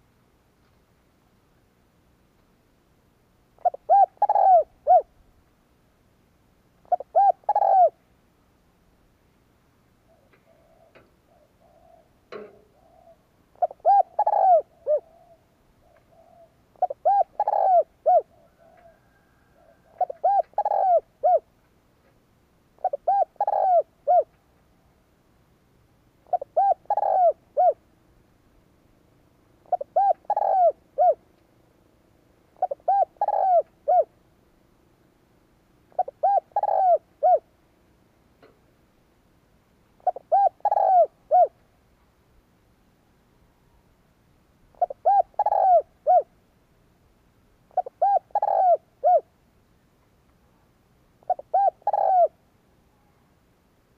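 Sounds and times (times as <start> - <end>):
dove cooing: 3.6 - 5.2, 6.8 - 8.0, 10.0 - 21.5, 22.8 - 24.4, 26.2 - 27.9, 29.6 - 31.3, 32.6 - 34.2, 35.9 - 37.5, 40.0 - 41.6, 44.7 - 46.3, 47.7 - 49.3, 51.2 - 53.2.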